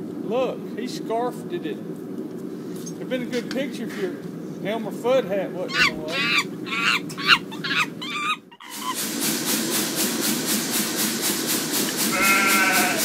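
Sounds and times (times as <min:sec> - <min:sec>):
forge fire hissing under blower: 0:08.7 - 0:13.0.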